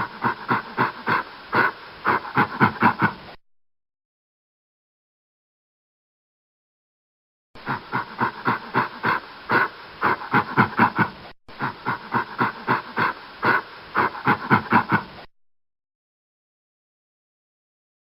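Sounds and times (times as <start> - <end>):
gorilla panting grunts: 0.0 - 3.4, 7.6 - 15.3.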